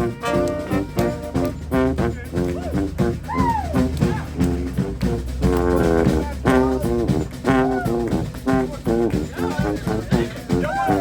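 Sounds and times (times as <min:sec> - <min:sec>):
horn phrases with bending notes: 0:00.0 - 0:11.0
steady bass line: 0:00.0 - 0:11.0.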